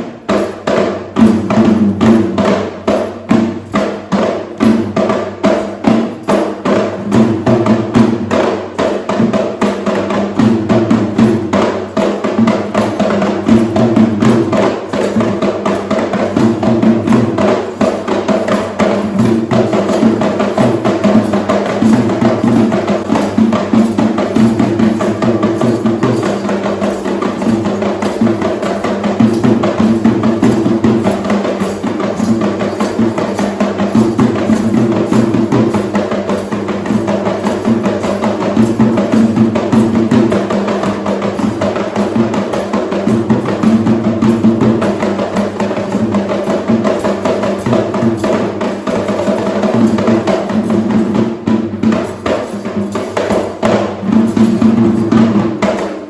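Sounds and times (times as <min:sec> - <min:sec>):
hand drums fast rhythm: 0:00.0 - 0:56.0.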